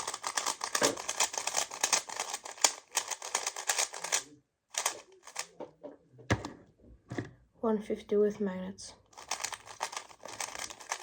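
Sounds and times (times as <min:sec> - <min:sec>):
plastic puzzle cube clicking: 0:00.0 - 0:05.5, 0:09.2 - 0:11.0.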